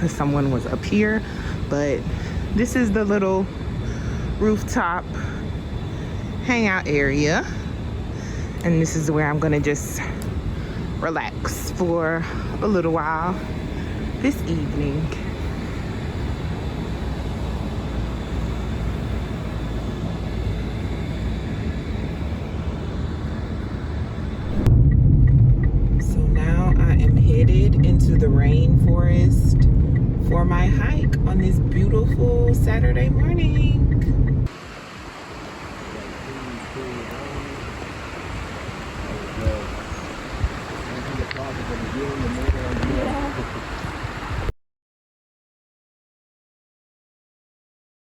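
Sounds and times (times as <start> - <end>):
low outdoor rumble: 0.0 - 44.5
running water: 34.5 - 44.5.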